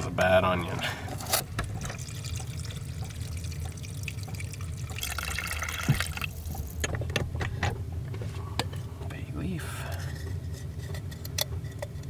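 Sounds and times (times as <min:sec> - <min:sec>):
steady low hum: 0:00.0 - 0:11.9
water trickling and dripping: 0:00.6 - 0:06.9.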